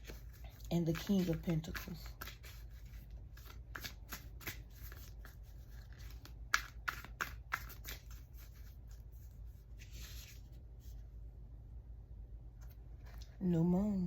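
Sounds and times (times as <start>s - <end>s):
cards being shuffled: 0.0s - 10.6s.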